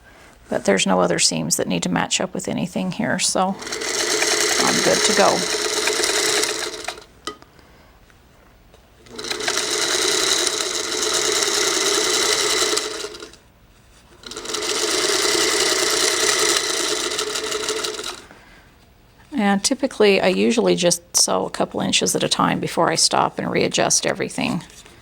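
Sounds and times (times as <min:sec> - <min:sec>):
sewing machine stitching: 0:03.5 - 0:07.1, 0:09.1 - 0:13.4, 0:14.2 - 0:18.3.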